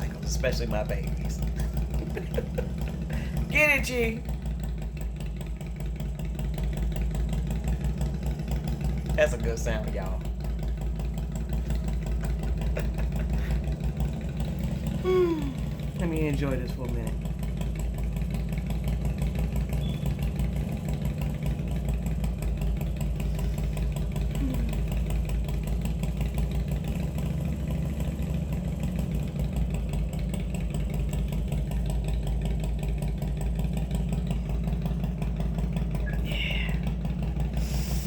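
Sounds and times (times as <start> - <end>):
motorcycle engine idling: 0.0 - 38.0.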